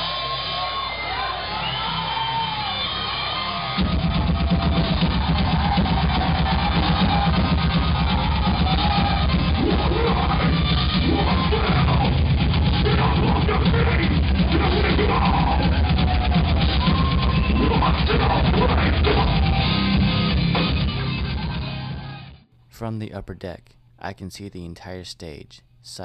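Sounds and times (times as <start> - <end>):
heavy metal band playing: 3.2 - 22.4.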